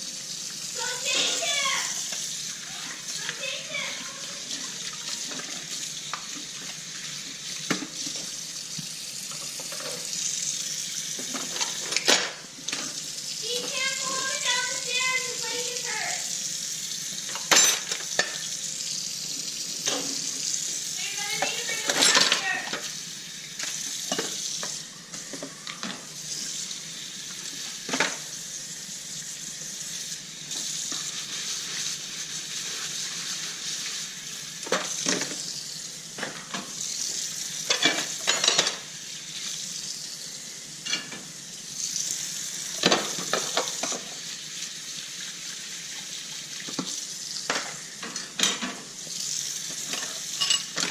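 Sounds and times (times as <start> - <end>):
running tap water: 0.0 - 50.9
dishes and cutlery clinking: 17.3 - 18.5, 21.4 - 22.9, 37.7 - 38.8, 49.8 - 50.9.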